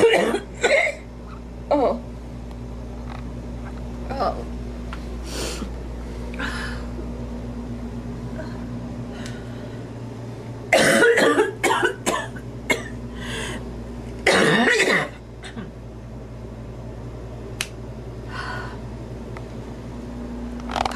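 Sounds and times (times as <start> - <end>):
woman coughing: 0.0 - 1.1, 10.7 - 13.0, 14.2 - 15.7
sharp click: 17.6 - 17.8.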